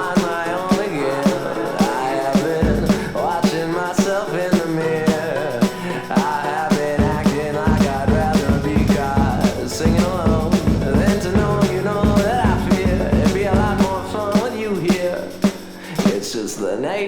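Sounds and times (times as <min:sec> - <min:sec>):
indie rock song: 0:00.0 - 0:17.0.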